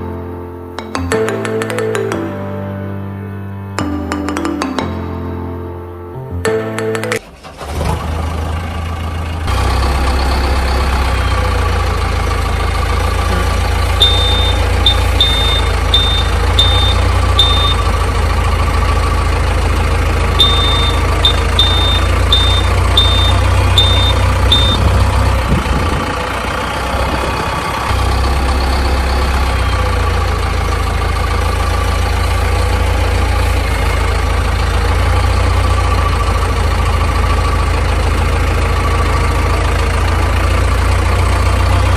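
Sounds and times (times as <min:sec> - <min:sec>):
heavy vehicle engine idling: 0:07.2 - 0:41.9
high reversing beeps: 0:13.4 - 0:18.0, 0:20.4 - 0:25.1.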